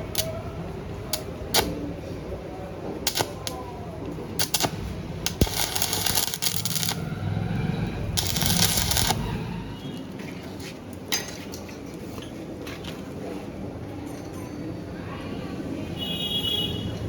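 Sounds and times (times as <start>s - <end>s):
metal rattling and rasping: 4.4s - 7.1s, 8.0s - 9.5s.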